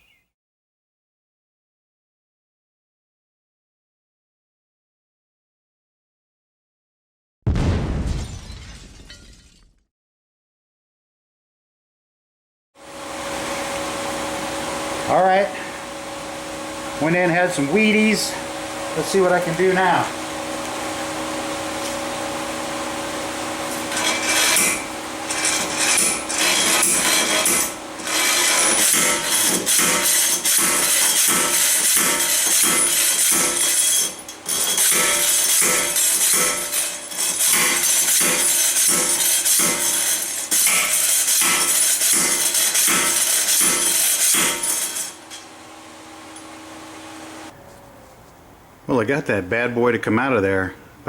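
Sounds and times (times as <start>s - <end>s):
steady hum: 12.9s - 49.5s
slide hammer scraping and knocking: 23.7s - 45.4s.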